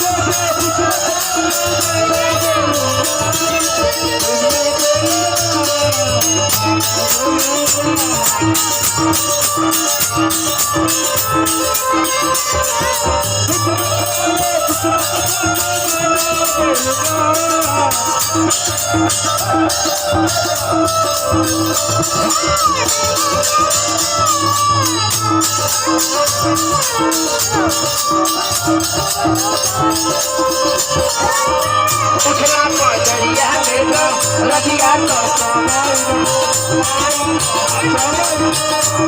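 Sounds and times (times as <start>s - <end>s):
jingling percussion beat: 0.0s - 39.0s
wavering folk melody: 0.0s - 39.0s.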